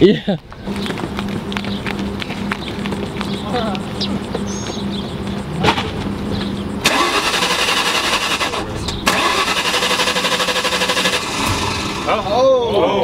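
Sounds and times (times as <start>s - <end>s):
car engine cranking without starting: 6.5s - 12.5s.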